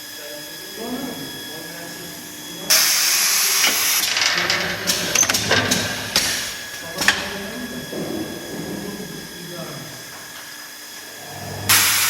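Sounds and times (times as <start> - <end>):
welding machine loud hiss: 0.0 - 8.5, 9.2 - 12.0
sharp clicks and knocks: 3.6 - 7.6.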